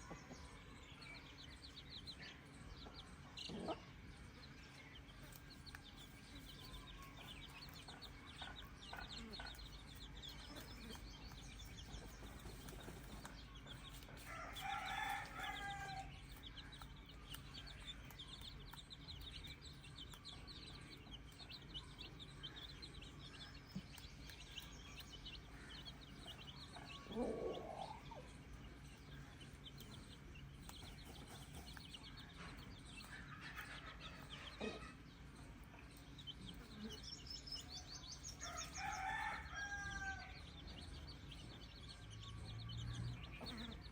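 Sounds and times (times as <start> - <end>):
chickens clucking: 1.6 - 39.8, 43.2 - 43.9
roosters crowing: 13.3 - 16.8, 25.5 - 29.2, 37.8 - 41.0.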